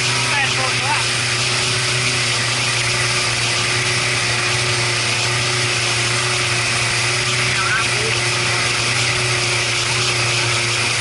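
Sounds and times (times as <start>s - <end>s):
boat engine droning: 0.0s - 11.0s.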